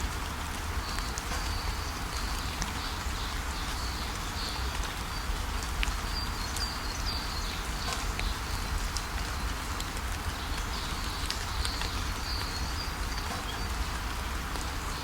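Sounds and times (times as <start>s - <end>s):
birds chirping: 10.2s - 15.0s.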